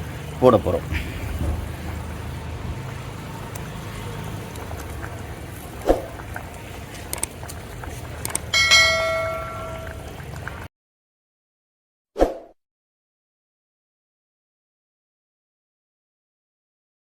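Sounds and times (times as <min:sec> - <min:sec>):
metal vessel struck ringing: 0:08.5 - 0:10.0.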